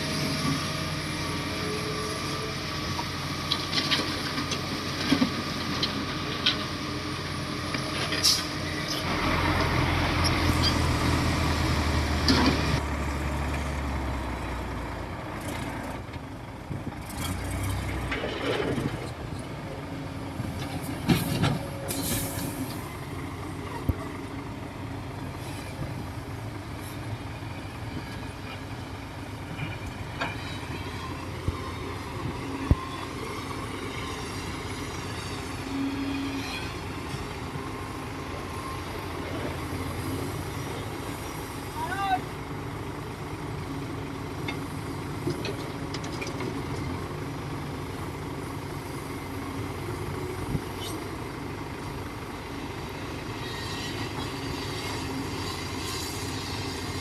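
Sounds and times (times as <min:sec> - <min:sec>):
heavy vehicle engine running: 0:00.0 - 0:57.0.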